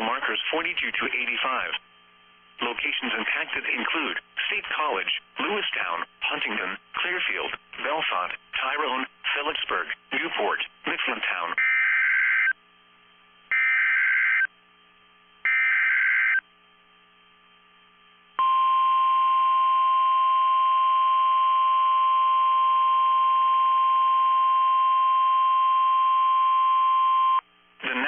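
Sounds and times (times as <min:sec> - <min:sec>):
steady warning alarm tone: 0:11.6 - 0:12.6, 0:13.5 - 0:14.5, 0:15.4 - 0:16.4
shrill buzzy data bursts: 0:13.5 - 0:14.5, 0:15.5 - 0:16.4.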